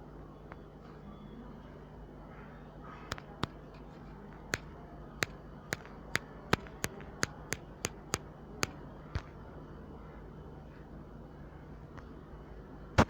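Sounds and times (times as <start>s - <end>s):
faint steady hum: 0.0s - 13.0s
sharp clicks or taps: 4.5s - 9.3s.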